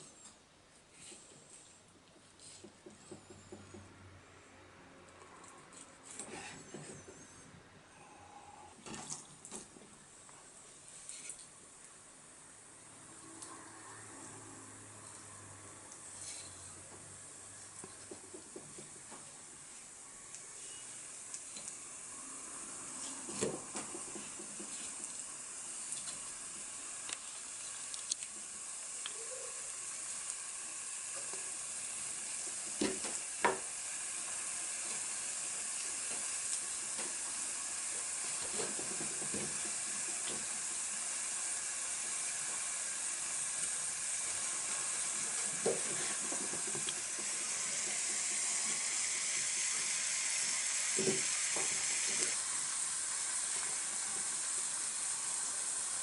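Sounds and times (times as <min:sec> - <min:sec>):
chicken sizzling in a pan: 0:20.4 - 0:56.0.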